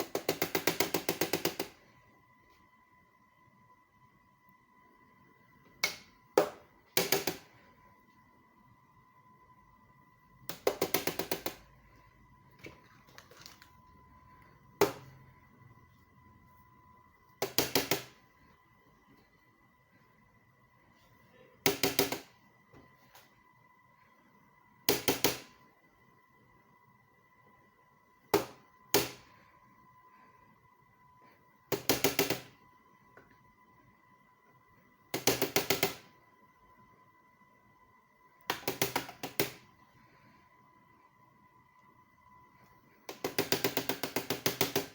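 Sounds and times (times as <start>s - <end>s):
faint steady high tone: 1.8s - 6.3s, 7.5s - 10.5s, 18.2s - 21.6s.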